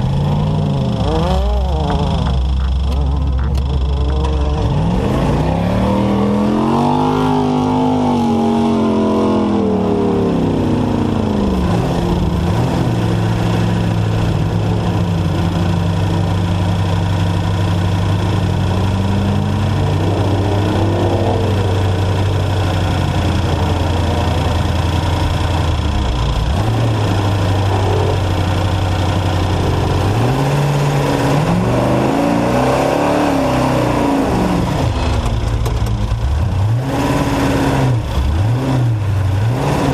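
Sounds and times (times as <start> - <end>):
constant rushing noise: 0.0 - 6.4, 34.0 - 39.9
race truck engine revving: 0.0 - 39.9.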